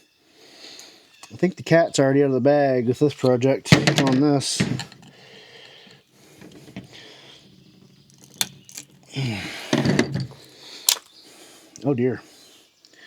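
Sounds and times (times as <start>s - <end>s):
plastic and metal clicking: 3.1s - 11.1s.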